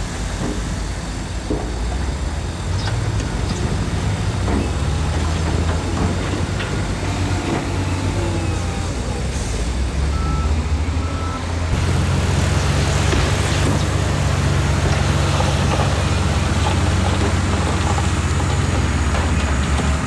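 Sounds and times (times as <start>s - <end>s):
heavy diesel engine running: 0.0s - 20.0s
reversing beep: 10.0s - 11.5s.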